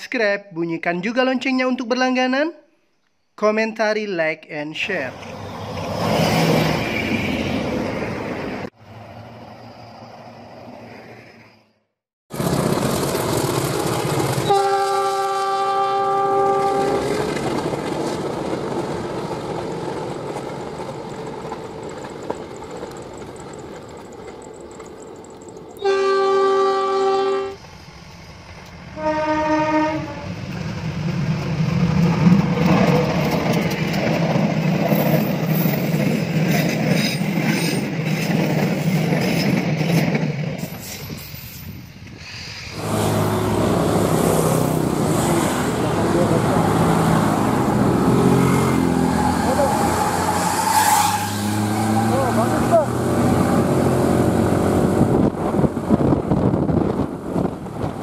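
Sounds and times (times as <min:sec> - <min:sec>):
bus air horn blasts: 0:14.4 - 0:17.1, 0:25.8 - 0:27.6, 0:29.0 - 0:30.3, 0:42.8 - 0:43.7.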